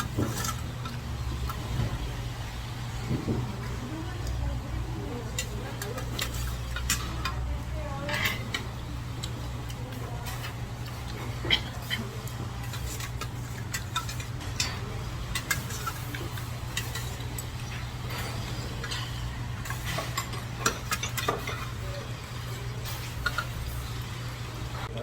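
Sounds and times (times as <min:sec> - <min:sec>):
utensils clicking against bowls: 0:00.0 - 0:02.1, 0:02.8 - 0:25.0.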